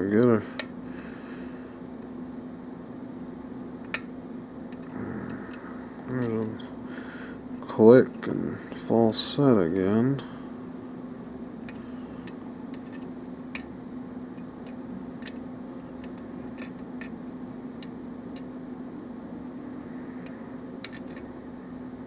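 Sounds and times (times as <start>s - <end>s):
low steady hum: 0.0s - 22.0s
lock pick clicking on lock pins: 4.7s - 4.9s, 5.5s - 6.6s, 11.6s - 13.7s, 14.4s - 17.2s, 20.2s - 21.3s.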